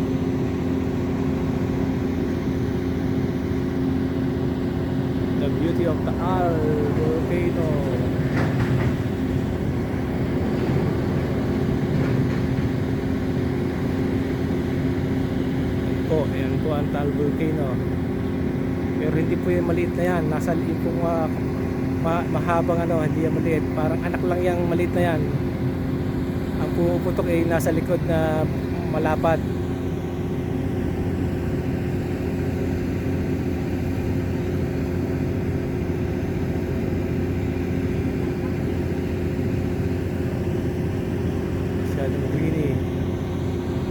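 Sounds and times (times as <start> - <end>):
mechanical hum: 0.0 - 43.9
steady low rumble: 0.0 - 43.9.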